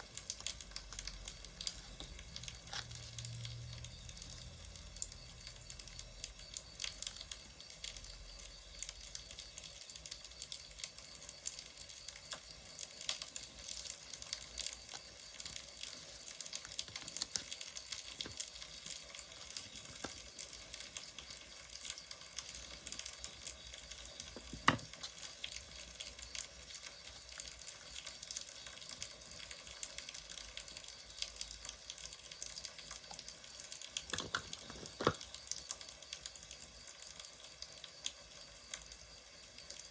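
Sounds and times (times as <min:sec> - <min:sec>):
wood fire crackling: 0:00.0 - 0:39.9.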